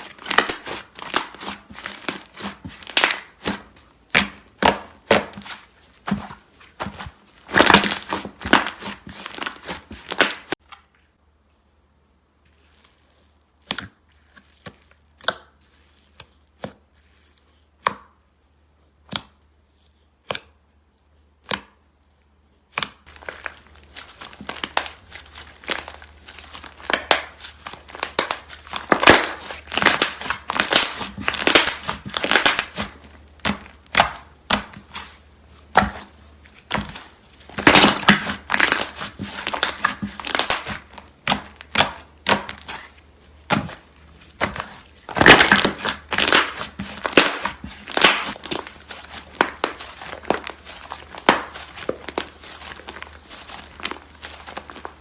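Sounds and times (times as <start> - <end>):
slime crackling and popping: 0.0 - 10.6, 22.7 - 55.0.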